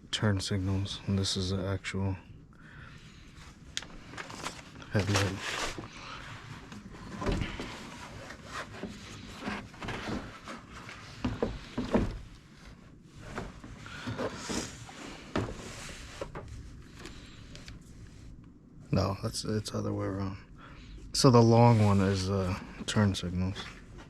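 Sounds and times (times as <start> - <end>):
hands rubbing and rustling wiring: 3.4 - 18.5.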